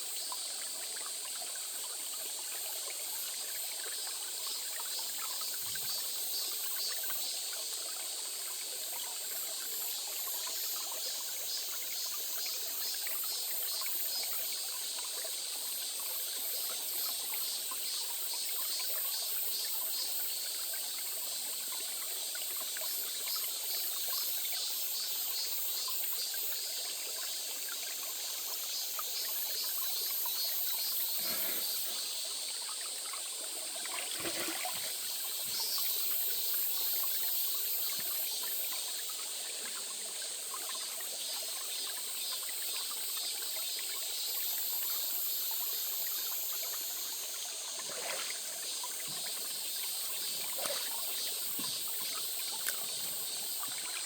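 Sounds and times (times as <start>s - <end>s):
stream trickling: 0.0s - 54.0s.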